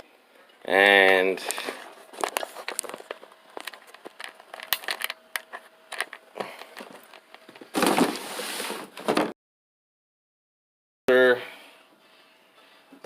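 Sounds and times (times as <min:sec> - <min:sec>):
small clicks and crinkling: 0:01.4 - 0:07.7.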